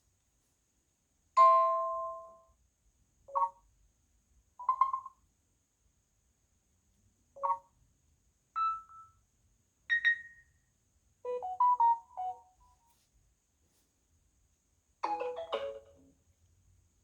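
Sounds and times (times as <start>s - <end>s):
short electronic phone tones: 11.3s - 12.5s
melodic ringtone notes: 11.3s - 12.6s, 15.0s - 16.0s.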